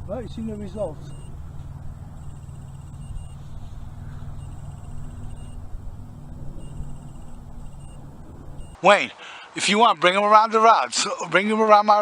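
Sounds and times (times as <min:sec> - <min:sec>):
constant low hum: 0:00.0 - 0:08.8
low mechanical rumble: 0:00.0 - 0:08.8.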